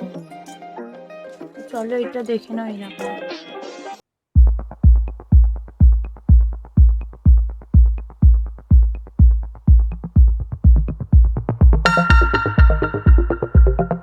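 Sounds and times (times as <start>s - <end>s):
kick drum beat: 4.4s - 14.0s
electronic background music: 11.3s - 14.0s
synth melody: 11.9s - 14.0s.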